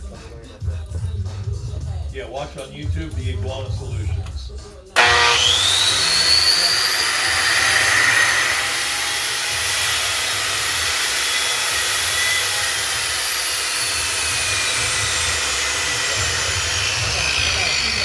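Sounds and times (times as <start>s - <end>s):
angle grinder whining: 5.0s - 18.0s.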